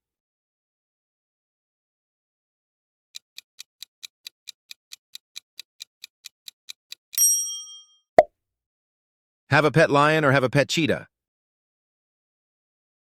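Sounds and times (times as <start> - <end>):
clock-like timer ticks: 3.2 - 7.3.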